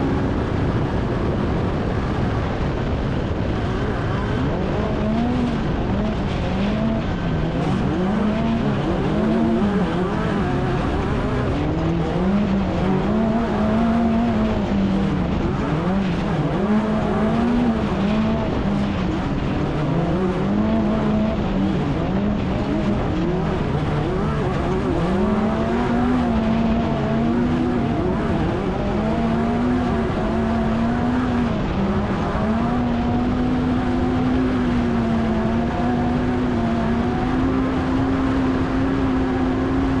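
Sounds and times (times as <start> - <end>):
race vehicle engine revving: 0.0 - 40.0
steady rushing noise: 0.0 - 40.0.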